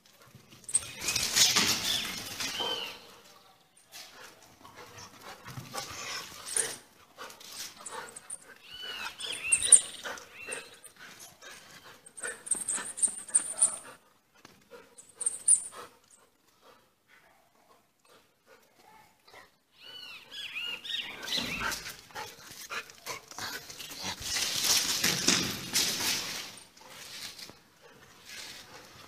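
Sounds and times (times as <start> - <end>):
dog scuffling and clicking: 21.7 - 27.6.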